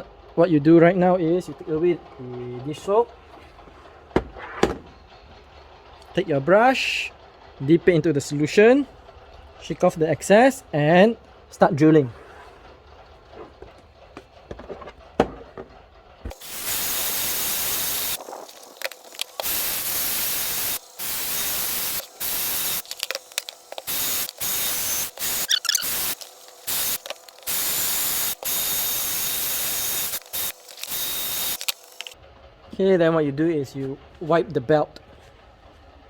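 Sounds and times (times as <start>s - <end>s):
drill brush scrubbing: 16.2s - 32.2s
drill click: 16.3s - 32.2s.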